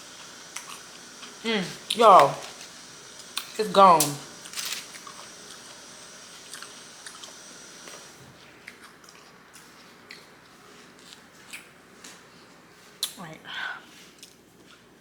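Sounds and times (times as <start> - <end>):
person chewing food: 0.2 - 1.4, 6.4 - 12.3, 14.0 - 14.8.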